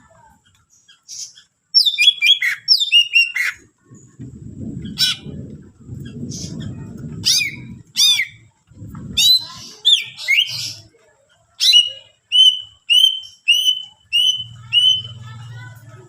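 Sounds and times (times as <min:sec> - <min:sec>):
bird whistling notes: 0:11.6 - 0:15.2.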